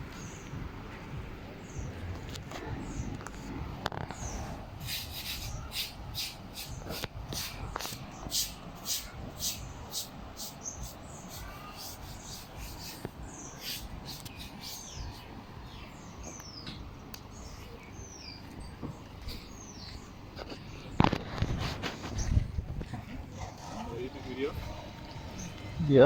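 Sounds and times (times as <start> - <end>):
rhythmic scraping: 3.3 - 15.7, 21.2 - 26.0
birds whistling downward: 4.1 - 20.1, 23.8 - 26.0.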